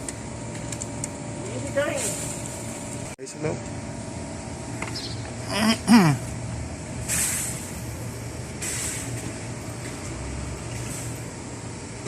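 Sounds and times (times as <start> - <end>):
short bursts of hiss: 7.0 - 7.7.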